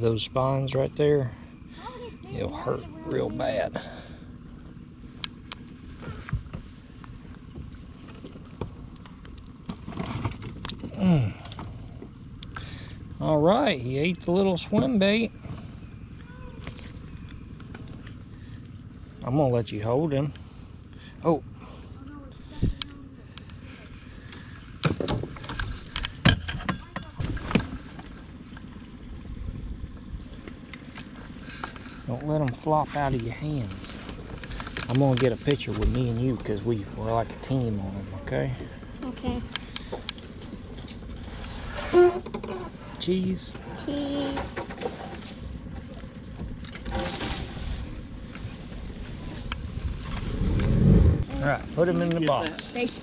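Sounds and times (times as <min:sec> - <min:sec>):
small fishing boat: 0:00.0 - 0:53.0
wind on microphone: 0:49.6 - 0:51.3.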